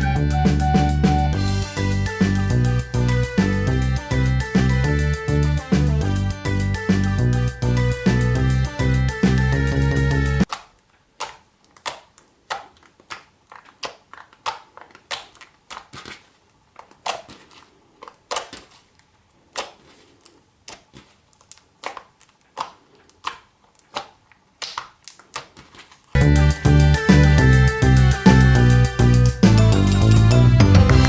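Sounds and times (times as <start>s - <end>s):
slime clicking and popping: 10.4s - 19.9s, 20.6s - 25.9s.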